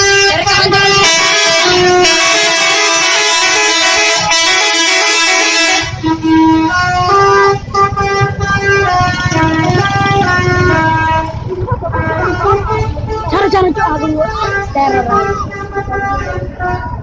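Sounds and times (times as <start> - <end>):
bus musical horn: 0.0 - 17.0
low rumble: 6.0 - 17.0.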